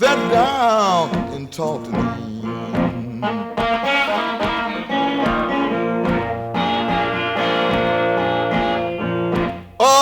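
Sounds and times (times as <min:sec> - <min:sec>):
person singing: 0:00.0 - 0:05.2, 0:09.8 - 0:10.0
blues song with guitar: 0:00.0 - 0:10.0.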